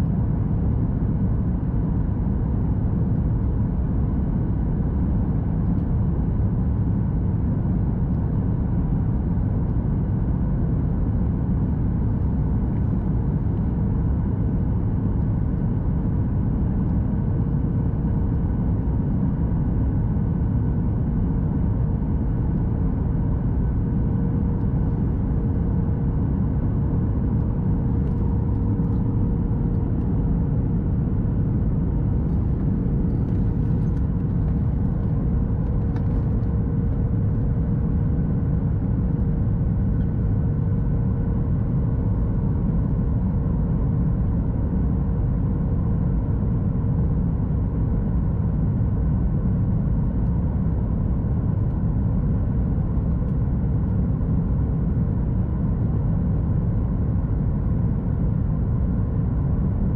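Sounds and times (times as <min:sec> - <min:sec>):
airplane cabin engine roar: 0:00.0 - 0:59.9
steady hum: 0:00.0 - 0:59.9.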